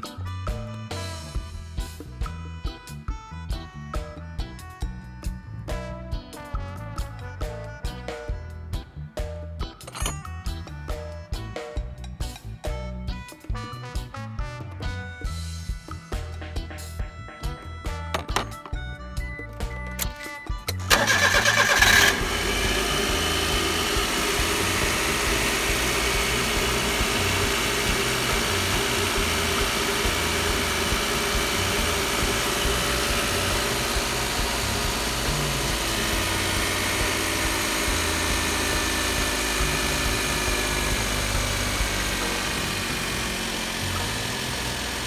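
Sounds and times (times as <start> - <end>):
starter cranking: 20.7 - 45.0
truck engine idling: 20.9 - 45.0.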